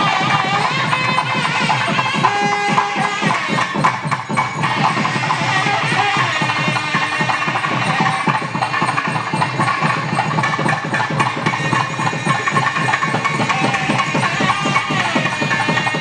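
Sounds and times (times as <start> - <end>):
fast steady drumming: 0.0 - 16.0
wavering held melody: 0.0 - 16.0.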